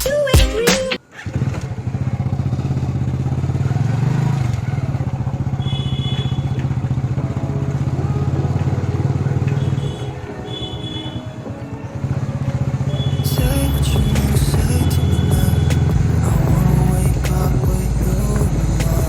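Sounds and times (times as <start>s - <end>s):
motorcycle engine running: 1.1s - 8.0s, 13.4s - 19.0s.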